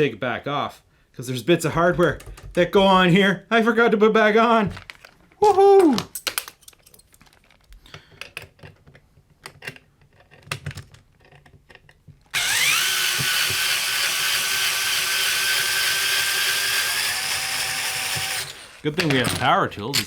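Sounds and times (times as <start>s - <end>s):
parts clicking and knocking: 1.8s - 2.8s, 6.0s - 13.8s, 17.2s - 20.0s
power drill whining: 12.3s - 19.4s.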